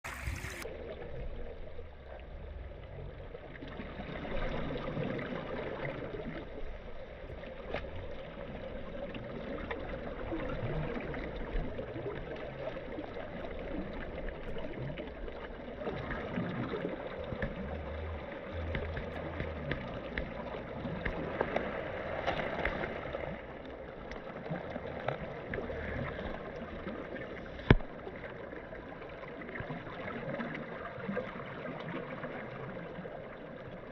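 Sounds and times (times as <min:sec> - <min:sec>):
stream running water: 0:00.0 - 0:33.9
low rumble: 0:13.7 - 0:24.1.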